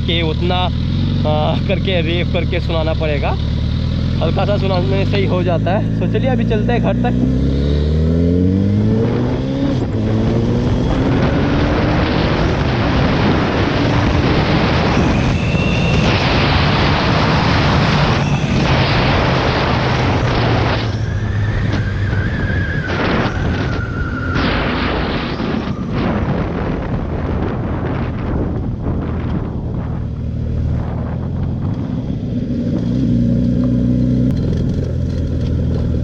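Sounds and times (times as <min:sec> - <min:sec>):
motorcycle engine at speed: 0:00.0 - 0:36.0
wind buffeting on microphone: 0:08.1 - 0:33.4.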